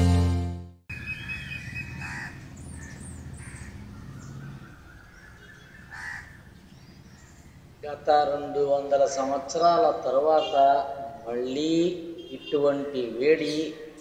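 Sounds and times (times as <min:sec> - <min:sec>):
small birds chirping: 0:00.9 - 0:07.9
crow cawing: 0:01.5 - 0:06.5.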